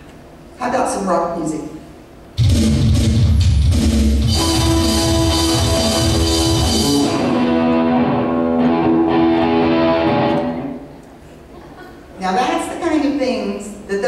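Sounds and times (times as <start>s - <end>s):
rock drums: 2.4s - 10.8s
electric guitar chords: 2.4s - 11.0s.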